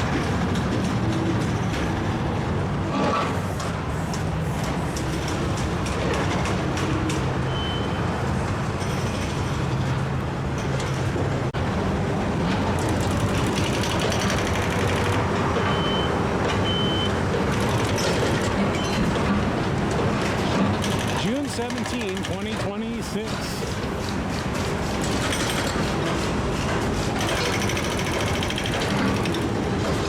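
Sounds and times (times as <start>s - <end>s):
heavy traffic noise: 0.0s - 30.0s
reversing alarm beeps: 7.5s - 8.0s, 15.7s - 17.2s.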